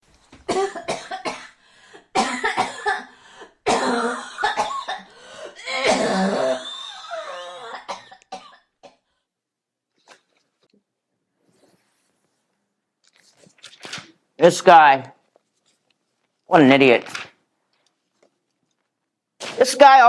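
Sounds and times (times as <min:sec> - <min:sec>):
person coughing hard: 0:00.5 - 0:09.0
person clearing throat: 0:03.7 - 0:08.7.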